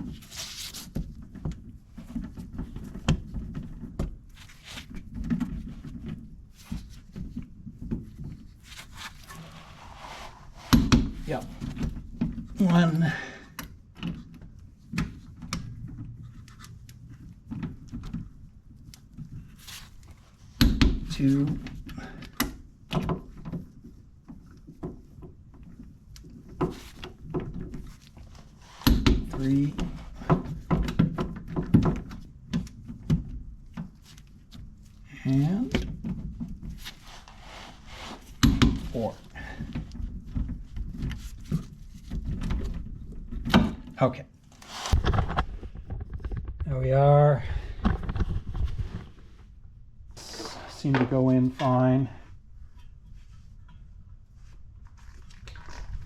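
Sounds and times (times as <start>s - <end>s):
rustling: 4.3s - 11.8s, 36.4s - 43.0s, 44.4s - 46.8s.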